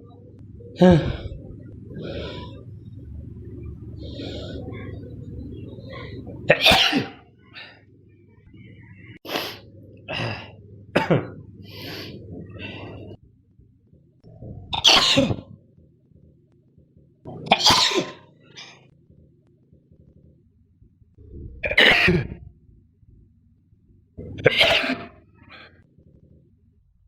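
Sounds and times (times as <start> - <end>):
breathy sounds: 0.7 - 3.2, 11.4 - 13.3.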